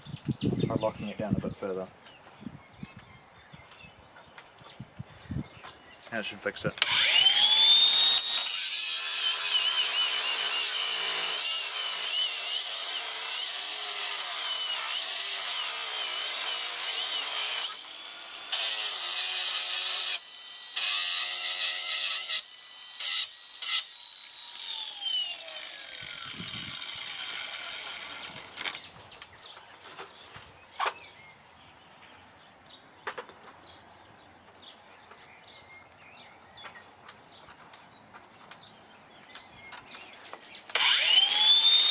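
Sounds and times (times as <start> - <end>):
grinder motor whine: 6.8 - 14.5, 19.9 - 28.9, 40.7 - 41.9.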